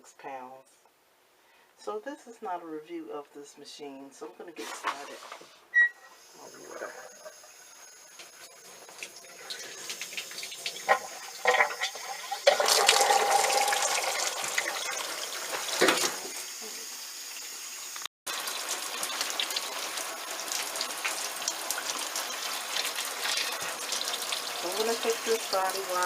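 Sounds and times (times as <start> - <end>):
water pouring into tub: 6.2 - 16.1, 18.3 - 26.0.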